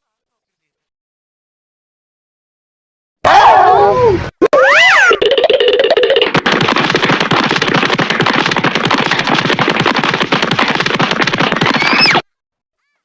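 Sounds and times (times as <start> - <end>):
fast rattle of clicks: 5.2 - 11.8.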